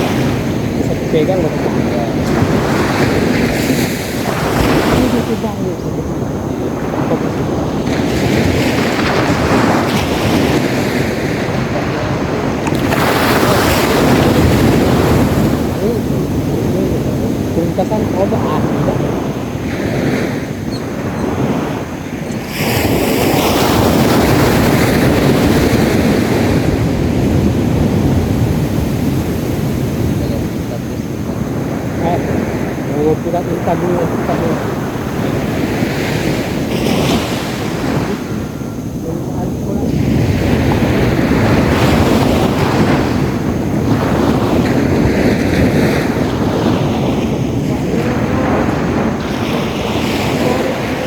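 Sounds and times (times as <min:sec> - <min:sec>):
sea waves breaking: 0:00.0 - 0:51.0
wind rumbling on microphone: 0:00.0 - 0:51.0.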